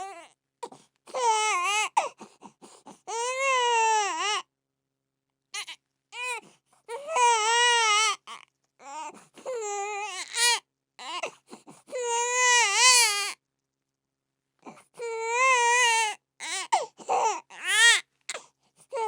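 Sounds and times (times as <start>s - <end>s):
baby crying: 1.1s - 2.1s, 3.1s - 4.4s, 5.6s - 11.3s, 11.9s - 13.4s, 15.0s - 18.0s.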